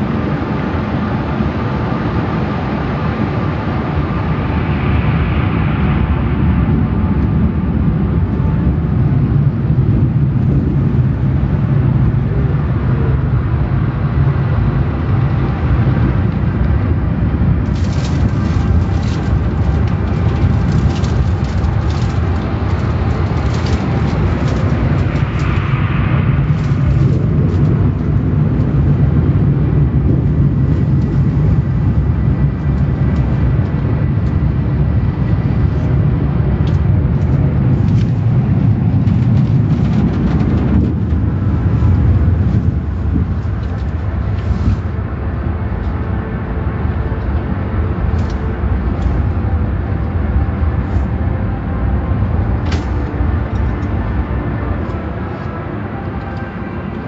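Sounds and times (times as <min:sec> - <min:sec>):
car wash machinery rumbling: 0:00.0 - 0:57.0
rapid crackling ticks: 0:17.7 - 0:25.7.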